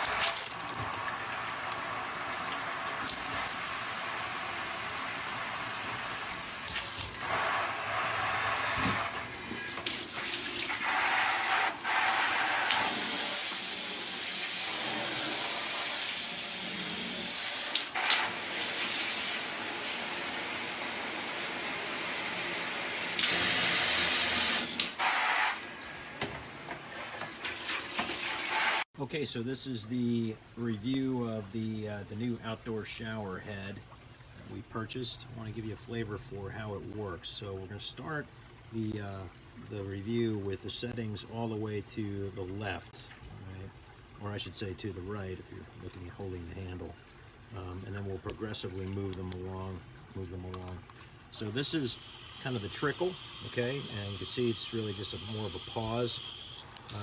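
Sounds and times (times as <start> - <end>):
shower head spraying water: 0.0 - 28.9, 51.5 - 57.0.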